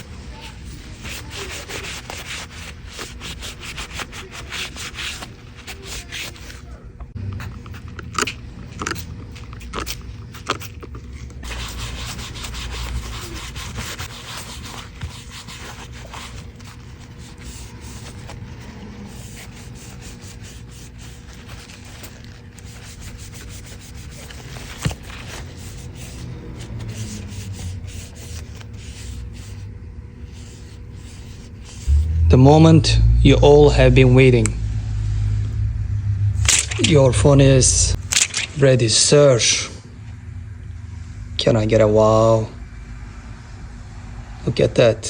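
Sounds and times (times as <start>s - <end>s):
scrubbing a phone case: 0.0s - 6.7s, 7.4s - 31.9s.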